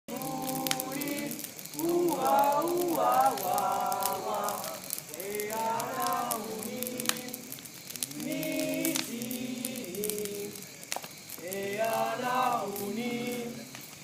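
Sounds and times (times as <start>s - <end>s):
small sharp crackles: 0.1s - 14.0s
voices chanting: 0.1s - 14.0s.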